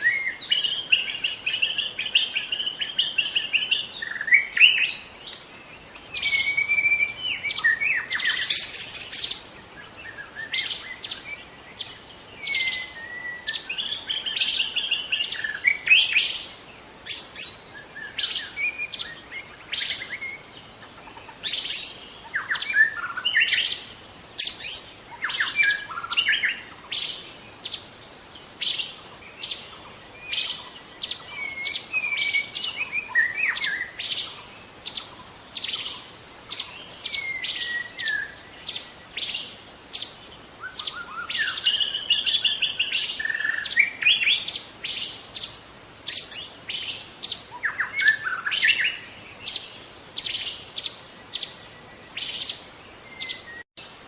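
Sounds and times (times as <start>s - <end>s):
bird whistled phrases: 6.2s - 8.5s, 12.4s - 16.2s.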